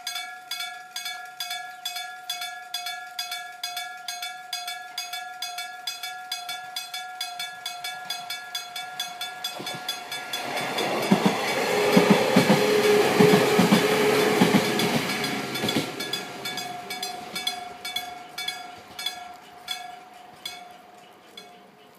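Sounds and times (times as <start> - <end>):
level crossing bell ringing: 6.6 - 21.9
train wheels clattering: 7.4 - 21.9.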